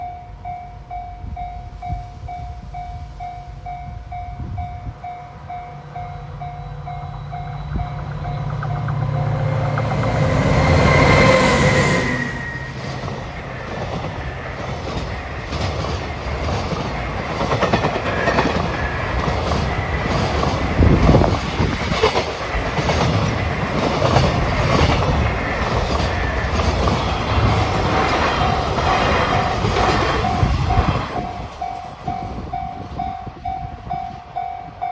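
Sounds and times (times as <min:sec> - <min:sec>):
crossing warning bell dinging: 0:00.0 - 0:34.9
freight train passing: 0:00.0 - 0:34.9
wheels clacking over rail joints: 0:05.5 - 0:32.6.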